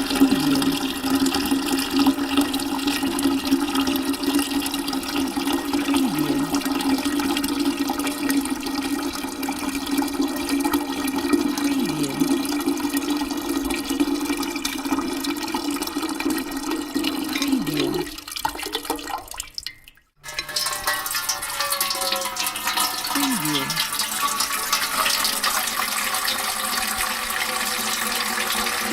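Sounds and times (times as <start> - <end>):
bucket humming: 0.0 - 15.0, 16.0 - 18.2
water pouring into bucket: 0.0 - 28.9.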